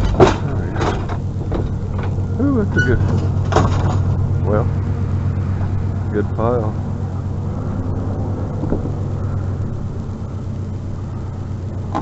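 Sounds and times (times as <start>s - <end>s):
rough noisy wash: 0.0s - 12.0s
vehicle engine idling: 0.0s - 12.0s.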